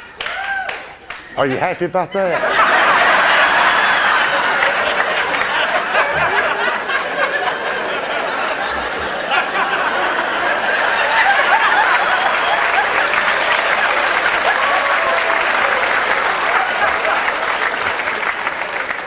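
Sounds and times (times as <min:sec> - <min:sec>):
audience applauding: 0:00.0 - 0:01.4, 0:02.4 - 0:19.0
audience laughing: 0:01.5 - 0:19.0.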